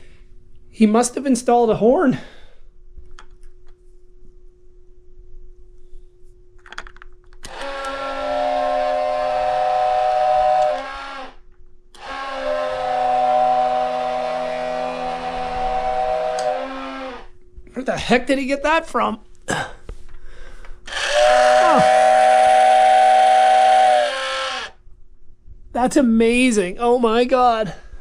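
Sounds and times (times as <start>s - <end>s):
faint steady hum: 0.0s - 28.0s
model train horn blasts: 7.5s - 11.4s, 12.0s - 17.3s, 20.9s - 24.7s.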